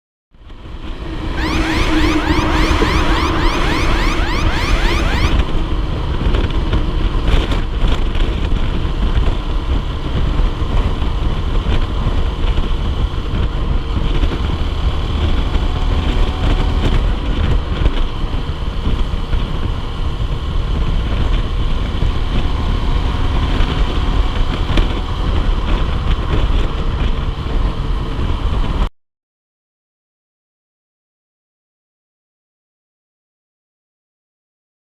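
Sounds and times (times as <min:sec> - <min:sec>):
wind rumble on microphone: 0:05.3 - 0:28.9.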